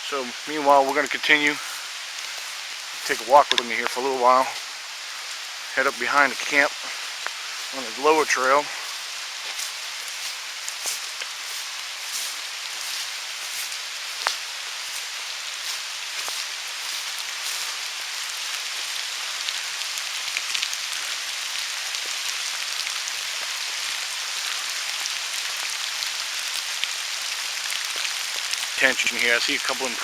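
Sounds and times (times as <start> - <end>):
steady rain falling: 0.0 - 30.0.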